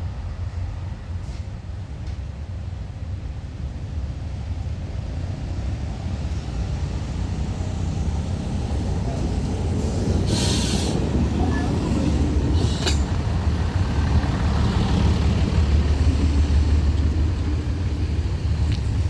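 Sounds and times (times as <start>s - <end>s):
diesel railcar rumbling: 0.0s - 19.0s
hissing air burst: 10.2s - 11.1s.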